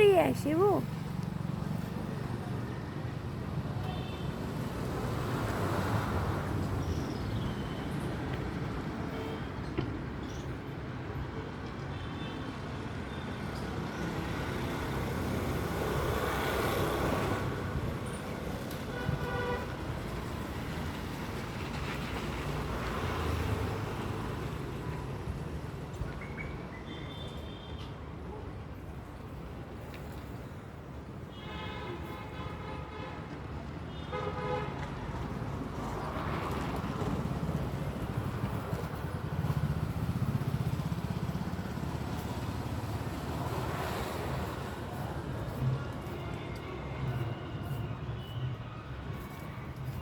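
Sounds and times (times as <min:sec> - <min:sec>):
road traffic rumble: 0:00.0 - 0:11.6, 0:28.7 - 0:50.0.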